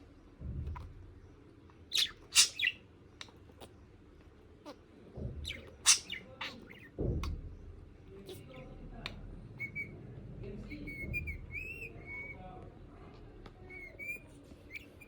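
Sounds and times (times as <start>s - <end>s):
low thump: 0.4s - 1.2s, 7.0s - 7.8s
budgerigar warbling whistles: 1.9s - 2.8s, 5.5s - 6.6s
budgerigar chirps: 1.9s - 3.3s, 5.4s - 7.0s.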